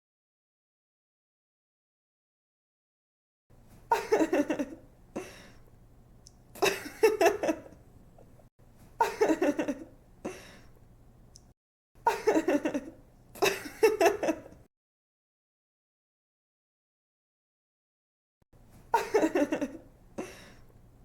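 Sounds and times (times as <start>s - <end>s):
woman giggling: 3.9s - 5.4s, 6.6s - 7.8s, 9.0s - 10.4s, 12.0s - 14.6s, 18.9s - 20.5s.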